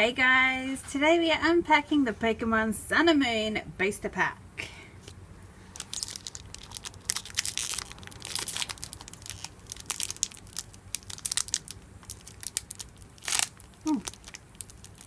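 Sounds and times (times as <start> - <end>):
foil wrapper crinkling and tearing: 5.0 - 15.0.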